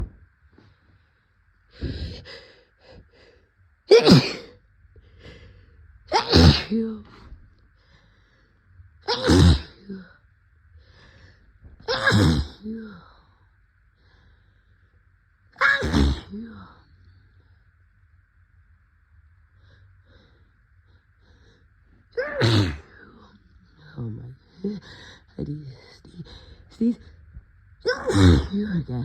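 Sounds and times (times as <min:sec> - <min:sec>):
person sneezing: 0:03.9 - 0:04.5, 0:06.1 - 0:06.8, 0:09.1 - 0:09.8, 0:11.9 - 0:12.6, 0:15.6 - 0:16.3, 0:22.2 - 0:22.9, 0:27.9 - 0:28.5.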